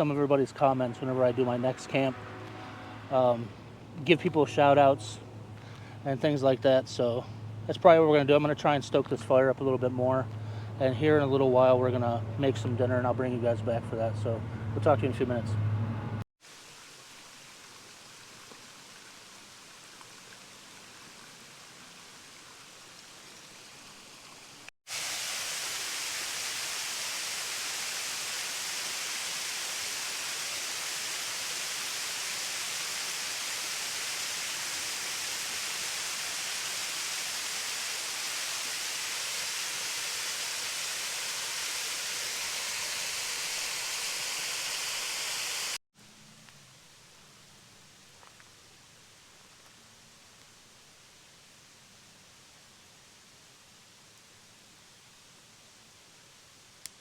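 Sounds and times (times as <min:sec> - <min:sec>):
waterfall rushing: 0:24.9 - 0:45.8.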